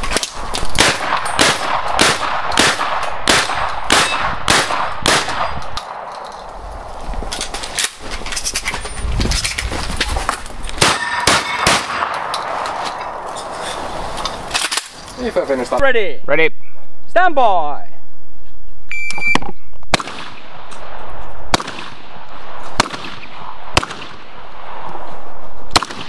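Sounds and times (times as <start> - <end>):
metal targets clanging: 0.0 - 4.4, 10.8 - 15.0
shotgun shots: 0.1 - 6.4, 10.8 - 13.3, 19.9 - 24.9, 25.7 - 26.0.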